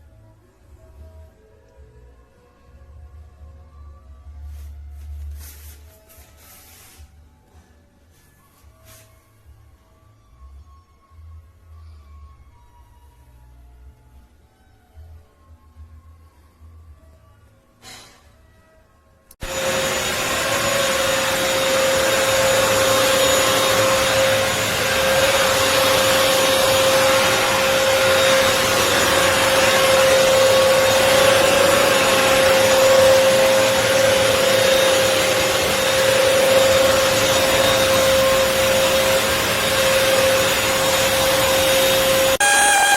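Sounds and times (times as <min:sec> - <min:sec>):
floor cleaner motor whining: 0:19.4 - 0:42.9.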